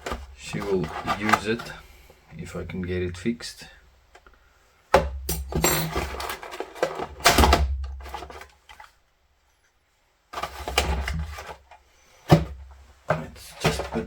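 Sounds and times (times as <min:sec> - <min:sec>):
knocks clatter and scraping: 0:00.0 - 0:02.0, 0:05.3 - 0:07.3, 0:10.3 - 0:14.0.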